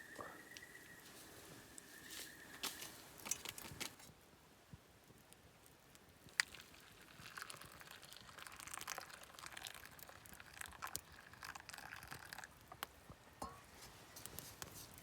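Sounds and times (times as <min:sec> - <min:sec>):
crinkling and rustling: 0:01.0 - 0:04.1, 0:13.4 - 0:15.0.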